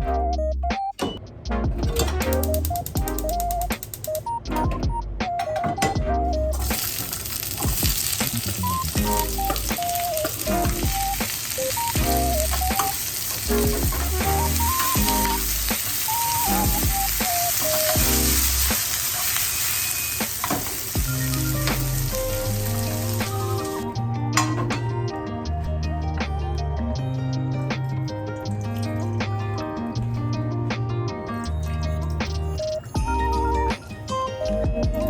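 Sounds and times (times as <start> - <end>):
background music: 0.0 - 35.0
food sizzling in a frying pan: 6.6 - 23.9.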